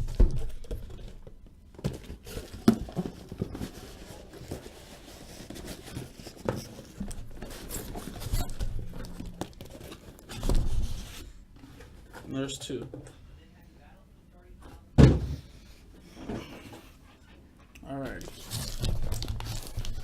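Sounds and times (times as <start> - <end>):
cardboard rustling and tearing: 18.2 - 20.0.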